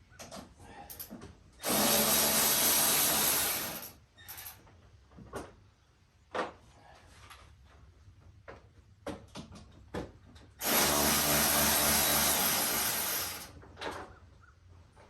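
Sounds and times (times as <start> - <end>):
power drill-driver running: 1.6 - 3.9, 10.6 - 13.5.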